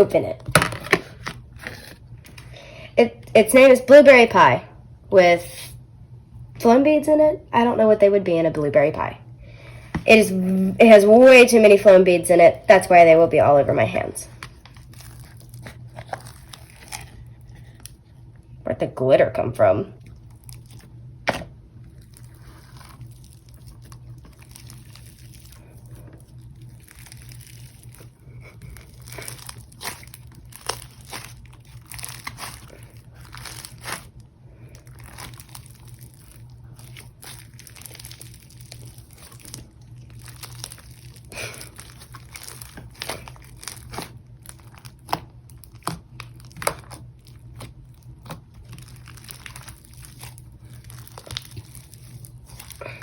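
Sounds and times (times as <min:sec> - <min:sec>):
slime crackling and crunching: 0:14.2 - 0:18.3, 0:20.1 - 0:53.0.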